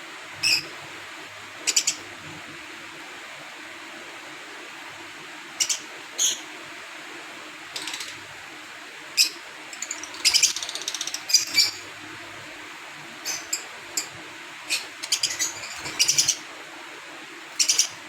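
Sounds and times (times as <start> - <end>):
lovebirds chirping: 14.7 - 16.4, 17.6 - 18.0.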